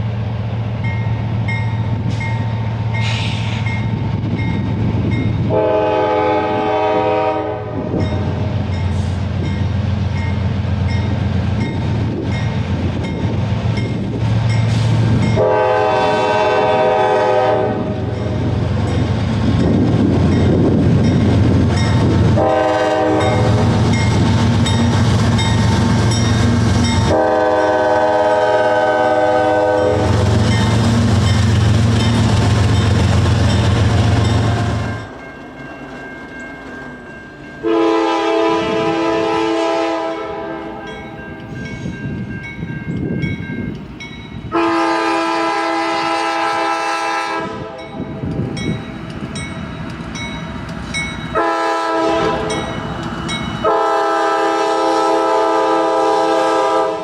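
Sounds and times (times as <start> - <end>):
diesel locomotive rumble: 0.0 - 57.0
locomotive air horn blasts: 5.4 - 8.6, 14.9 - 18.4, 22.3 - 23.9, 27.0 - 30.4, 37.6 - 40.8, 44.5 - 48.0, 51.3 - 52.8, 53.6 - 57.0.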